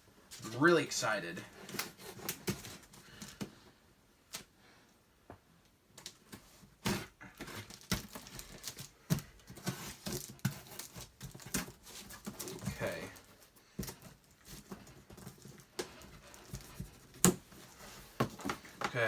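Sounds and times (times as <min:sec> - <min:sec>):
cardboard crinkling: 0:06.1 - 0:19.0.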